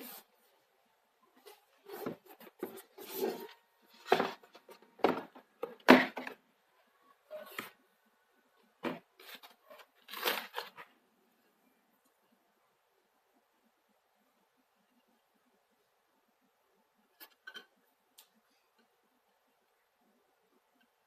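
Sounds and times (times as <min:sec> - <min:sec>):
packaging rustling and tearing: 0:09.2 - 0:10.8.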